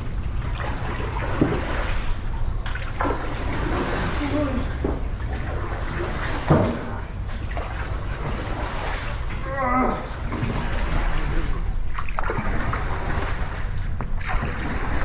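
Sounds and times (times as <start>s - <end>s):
paddles splashing through water: 0.0s - 9.3s, 10.0s - 15.0s.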